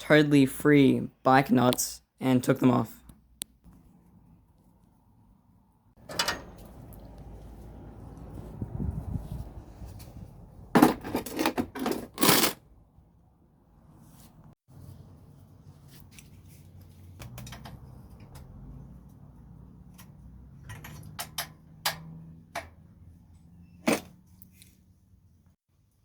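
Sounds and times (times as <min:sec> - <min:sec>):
metallic clicks and knocks: 0:06.0 - 0:06.7, 0:20.0 - 0:22.8.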